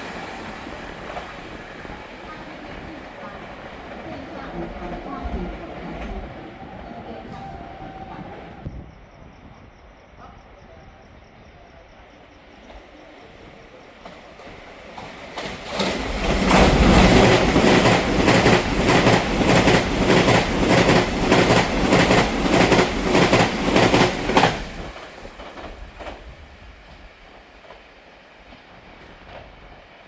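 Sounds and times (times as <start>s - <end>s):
train wheels clacking over rail joints: 14.0s - 27.0s.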